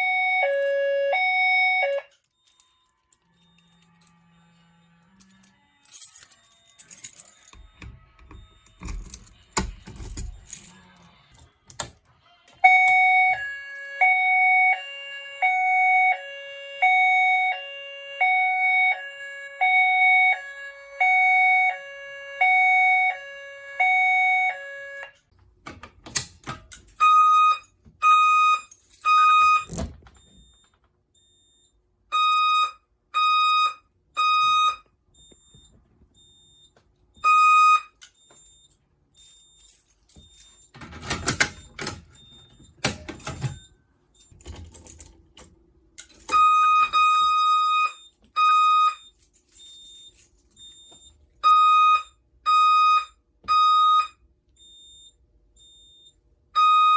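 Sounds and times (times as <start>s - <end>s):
alarm beeps: 0.0s - 4.6s, 12.6s - 25.2s, 27.0s - 38.8s, 46.3s - 56.9s
two-note hi-lo alarm tone: 12.6s - 25.2s.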